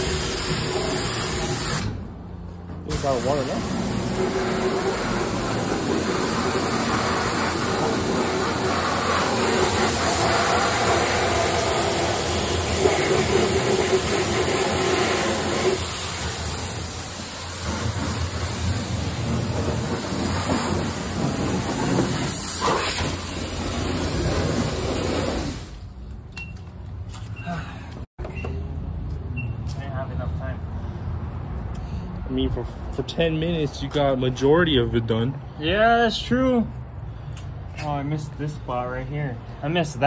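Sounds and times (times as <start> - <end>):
high-pressure water spray hissing: 0.0 - 1.9, 2.9 - 25.8.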